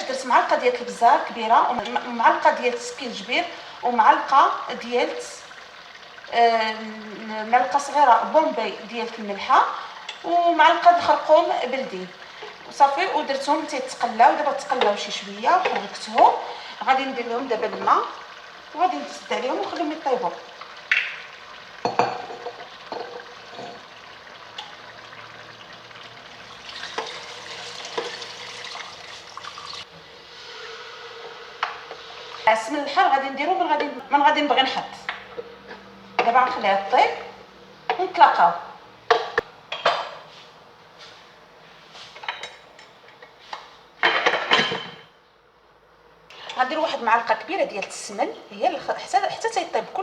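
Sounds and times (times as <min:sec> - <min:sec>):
food sizzling in oil: 0:00.2 - 0:33.7
pots and utensils clinking: 0:14.5 - 0:16.4, 0:19.6 - 0:29.9, 0:42.2 - 0:43.4, 0:44.0 - 0:45.1
water pouring: 0:16.8 - 0:31.2.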